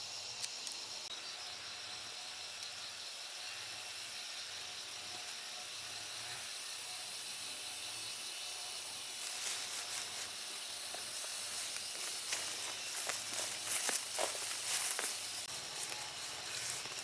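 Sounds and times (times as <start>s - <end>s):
high outdoor hiss: 0.0s - 17.0s
rustling and crunching: 9.2s - 17.0s.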